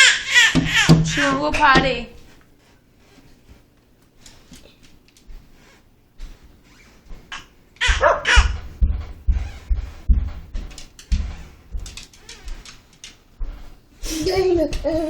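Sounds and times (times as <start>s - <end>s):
low thumps: 7.1s - 13.8s
dog barking: 7.9s - 8.4s.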